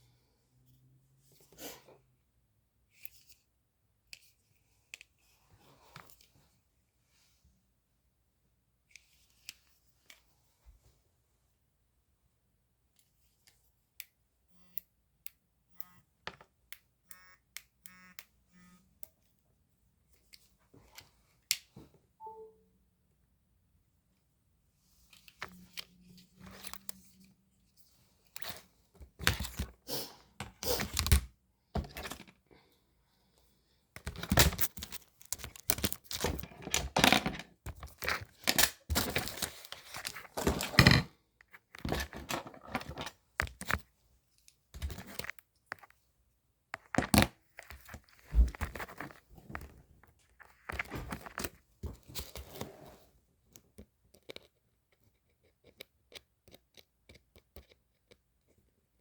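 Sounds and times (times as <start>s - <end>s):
rustling and scraping: 47.6s - 53.2s.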